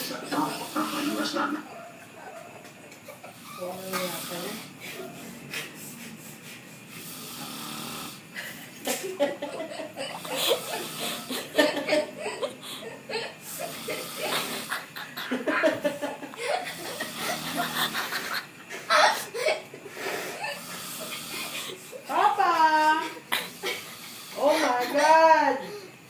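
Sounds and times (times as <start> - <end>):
person laughing: 8.4 - 19.8.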